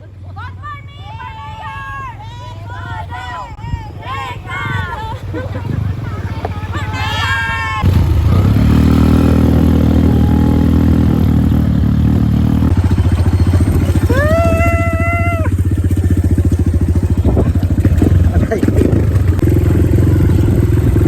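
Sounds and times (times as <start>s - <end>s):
vehicle engine climbing off-road: 0.0s - 21.0s
high-pitched shout: 0.4s - 5.3s, 6.3s - 7.9s, 9.8s - 11.0s, 14.0s - 15.6s.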